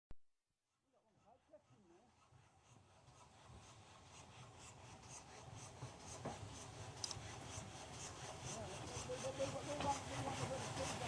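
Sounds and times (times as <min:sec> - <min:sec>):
train high hiss: 0:02.7 - 0:11.0
train rumble: 0:03.1 - 0:11.0.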